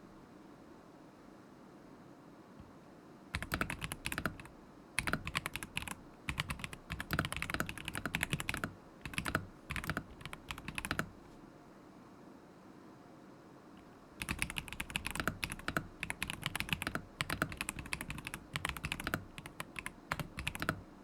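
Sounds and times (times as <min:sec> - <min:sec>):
mechanical keyboard typing: 0:03.4 - 0:11.2, 0:14.2 - 0:20.9.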